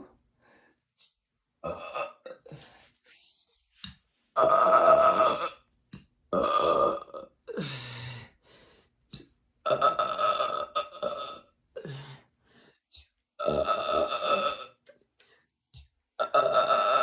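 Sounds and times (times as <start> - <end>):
woman burping loudly: 1.6 - 2.6, 4.4 - 5.6, 6.3 - 7.7, 9.6 - 11.9, 13.4 - 14.8, 16.2 - 17.0.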